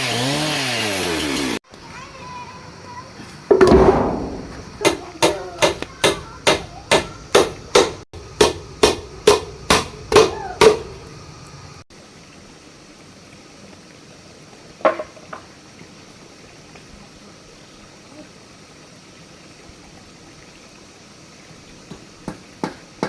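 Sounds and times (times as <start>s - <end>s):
hammer blows ringing: 3.5s - 11.0s.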